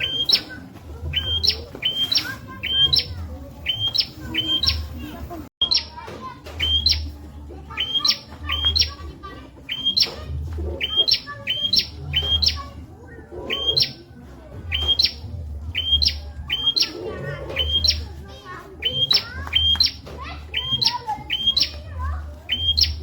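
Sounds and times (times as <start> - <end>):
bird chirping upward notes: 0.0 - 6.0, 6.6 - 18.2, 18.8 - 23.0.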